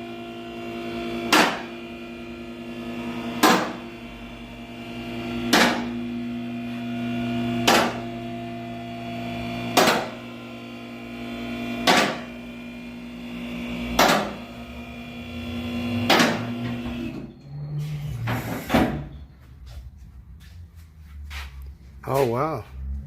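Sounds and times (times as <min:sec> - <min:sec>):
electric machine humming: 0:00.0 - 0:17.3.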